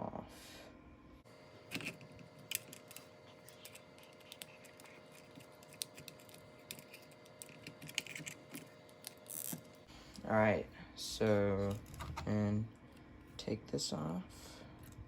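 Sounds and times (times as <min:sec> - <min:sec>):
small metal parts clicking and scraping: 0:01.7 - 0:09.7.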